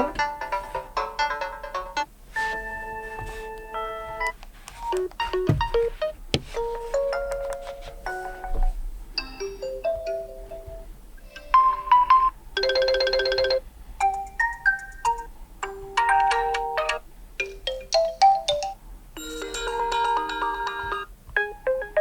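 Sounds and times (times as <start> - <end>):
smartphone ringtone melodies: 9.2 - 22.0.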